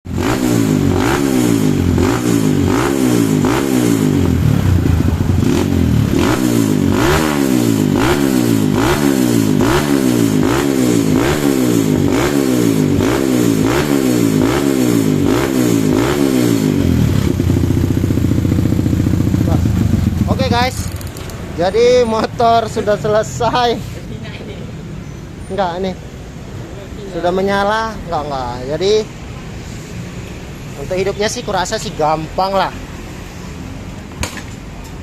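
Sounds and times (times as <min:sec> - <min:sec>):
dirt bike engine revving: 0:00.1 - 0:21.3
dirt bike engine idling: 0:01.6 - 0:21.1.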